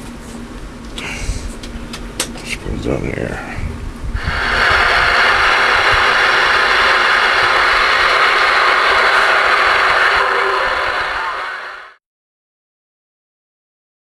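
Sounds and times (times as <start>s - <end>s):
radio static hiss: 4.2s - 12.0s.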